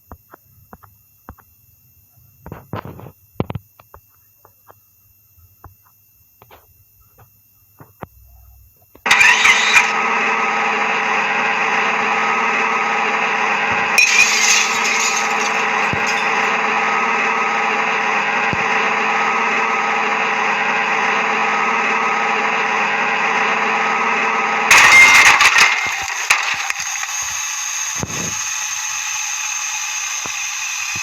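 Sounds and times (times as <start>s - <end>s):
engine-like drone: 9.1s - 31.0s.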